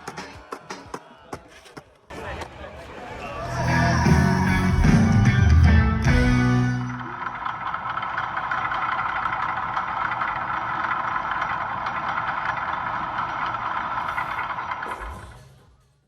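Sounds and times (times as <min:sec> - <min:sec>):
music: 0:00.0 - 0:01.0, 0:03.4 - 0:07.1.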